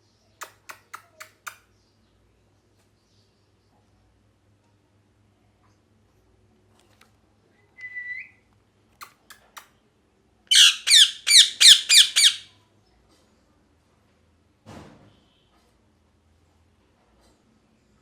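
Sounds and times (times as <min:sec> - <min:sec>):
parrot harsh squawks: 0:10.5 - 0:12.5.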